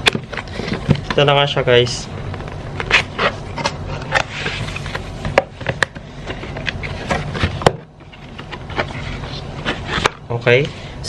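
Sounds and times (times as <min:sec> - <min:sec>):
packaging scraping and rubbing: 0:02.7 - 0:05.2, 0:06.2 - 0:10.2.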